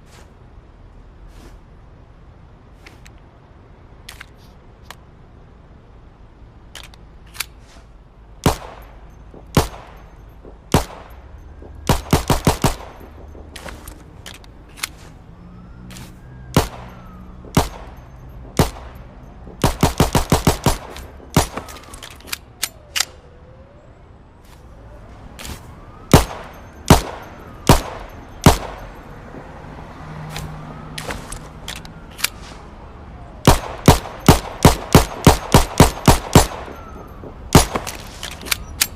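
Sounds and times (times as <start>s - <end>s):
pistol shots: 8.4s - 11.2s, 11.8s - 13.5s, 16.6s - 18.0s, 18.6s - 22.0s, 26.1s - 28.8s, 33.4s - 38.1s.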